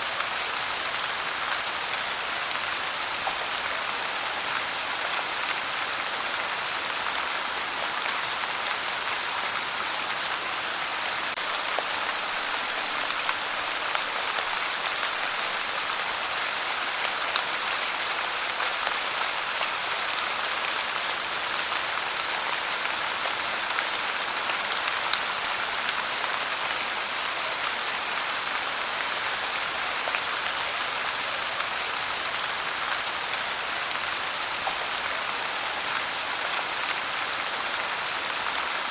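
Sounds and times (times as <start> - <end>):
rain pattering on a surface: 0.0 - 38.9.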